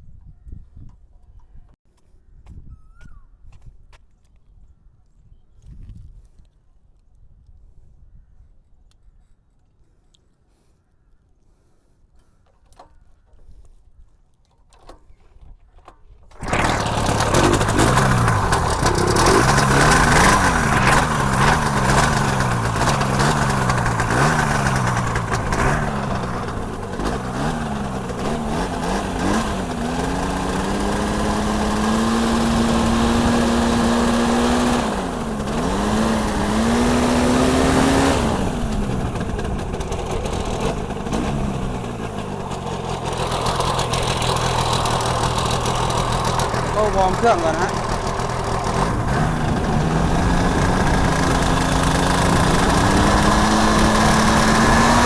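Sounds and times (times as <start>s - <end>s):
two-stroke engine running: 16.3s - 55.0s.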